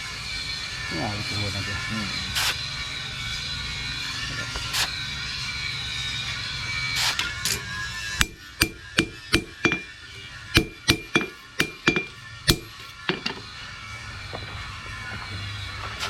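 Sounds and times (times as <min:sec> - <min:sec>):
hammer striking steel: 0:07.2 - 0:13.5.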